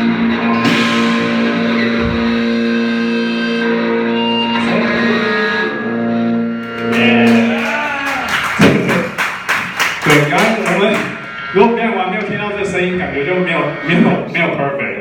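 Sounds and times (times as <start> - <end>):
rock band sharp hits: 0.4 - 2.8.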